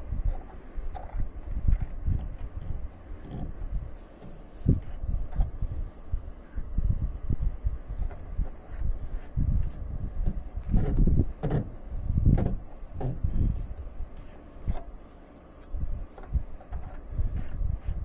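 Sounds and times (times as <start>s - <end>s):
knocks and clunks on pipe fitting: 10.2s - 13.4s.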